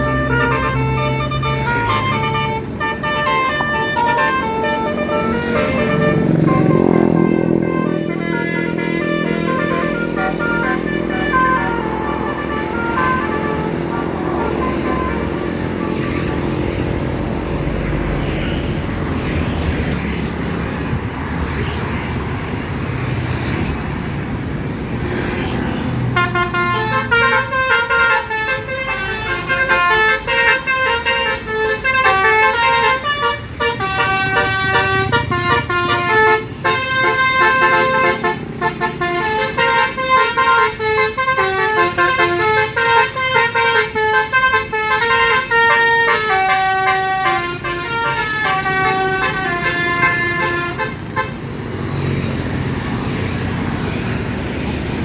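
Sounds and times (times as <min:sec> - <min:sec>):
bus melody horn playing a tune: 0:00.0 - 0:17.3, 0:25.4 - 0:51.6
bus engine running: 0:00.0 - 0:21.4, 0:25.8 - 0:55.0
traffic noise: 0:00.0 - 0:55.0.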